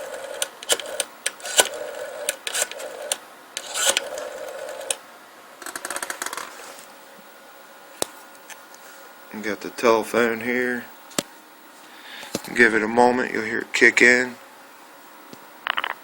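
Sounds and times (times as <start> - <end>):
rotary dial pulsing clicks: 0.0 - 5.0
steady dial tone: 0.0 - 5.0
handset and dial clicks: 0.1 - 5.0.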